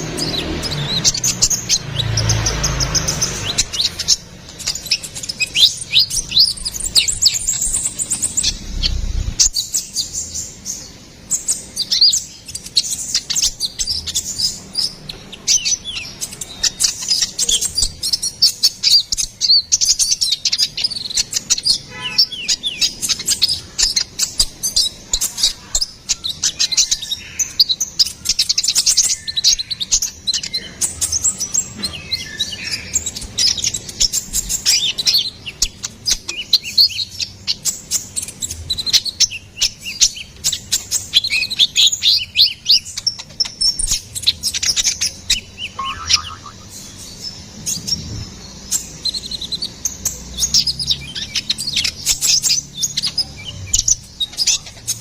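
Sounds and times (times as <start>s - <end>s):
sunbird twittering song: 0.0s - 55.0s
low rumble: 8.4s - 9.4s.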